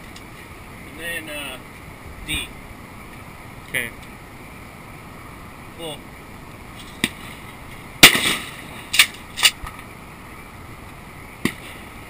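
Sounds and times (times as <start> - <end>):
loud shotgun shot: 8.0 - 9.1.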